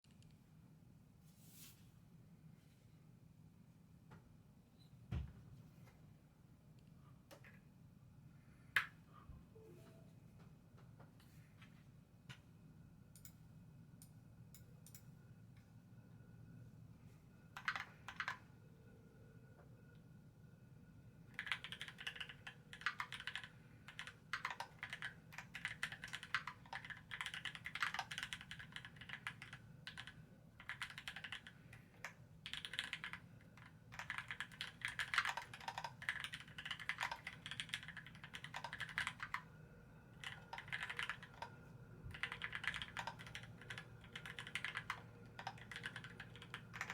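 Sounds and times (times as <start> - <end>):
typing on keyboard: 17.6 - 18.4, 21.3 - 39.4, 40.2 - 46.9.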